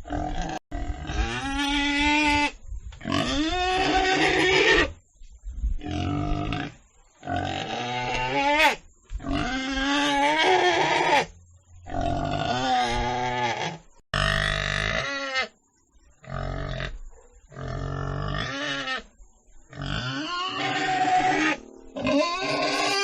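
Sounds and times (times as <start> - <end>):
pigs calling: 16.2 - 19.1, 19.7 - 23.0.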